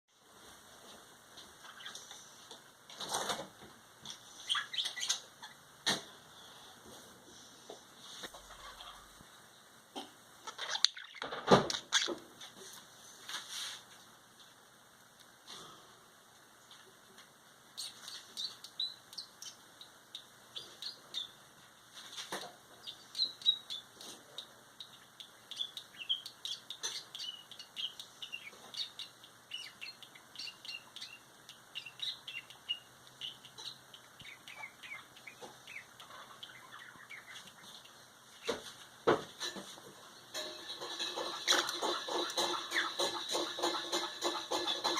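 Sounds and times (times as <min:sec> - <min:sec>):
budgerigars chirping: 0:04.4 - 0:05.6, 0:22.8 - 0:38.6, 0:41.2 - 0:44.9.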